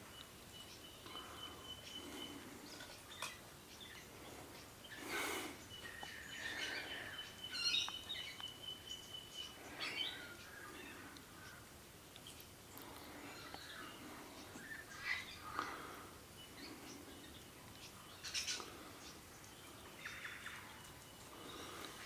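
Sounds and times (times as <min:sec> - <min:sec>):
birds chirping: 0:00.0 - 0:22.0.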